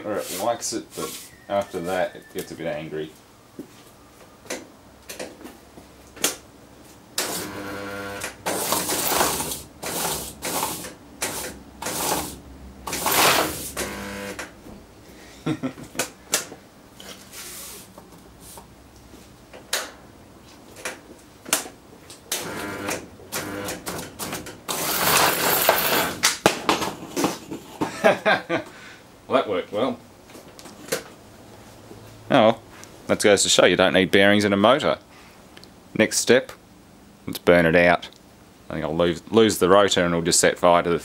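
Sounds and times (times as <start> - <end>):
buzzing motor hum: 7.2 - 10.1, 12.9 - 14.5, 22.3 - 26.2.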